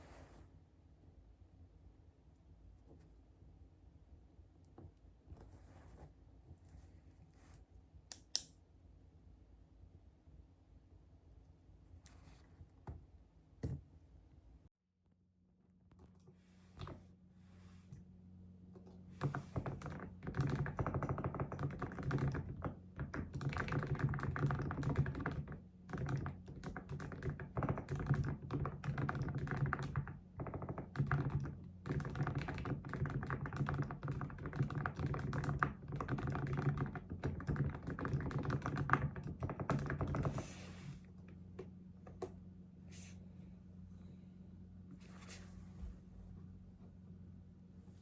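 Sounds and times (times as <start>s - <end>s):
fast typing on keyboard: 19.2s - 40.5s.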